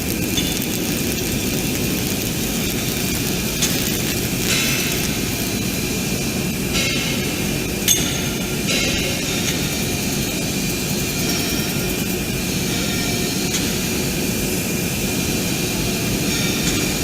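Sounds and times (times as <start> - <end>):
laser cutting machine roar: 0.0 - 5.7
high hiss: 0.0 - 6.2.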